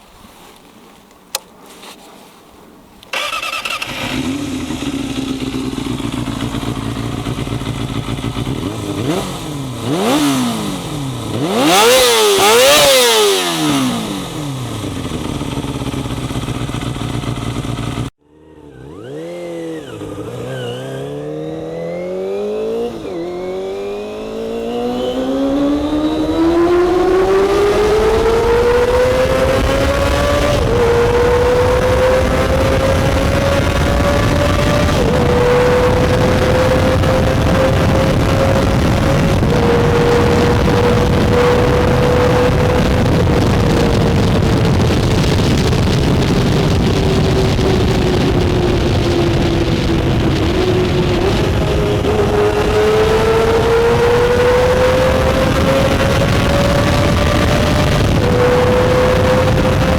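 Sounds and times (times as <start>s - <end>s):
motorcycle engine revving: 3.1s - 59.9s.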